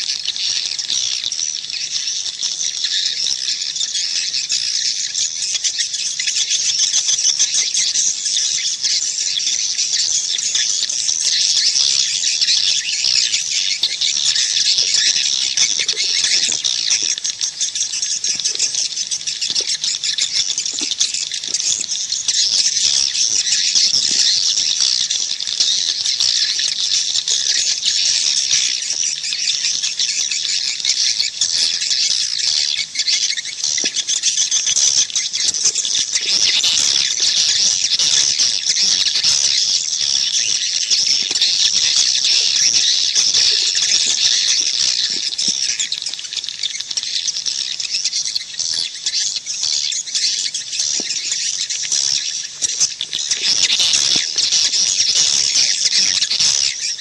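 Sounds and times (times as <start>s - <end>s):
swiftlets twittering: 10.3s - 25.4s.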